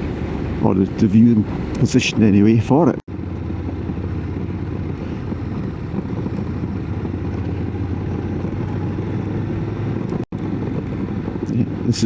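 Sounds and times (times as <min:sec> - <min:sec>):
rush of air and road noise: 0:00.0 - 0:12.0
motorcycle engine running: 0:03.1 - 0:12.0.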